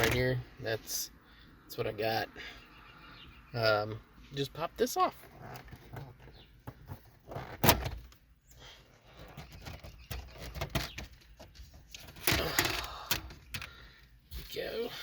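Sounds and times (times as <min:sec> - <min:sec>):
plastic clicking and rattling: 0:09.2 - 0:13.7.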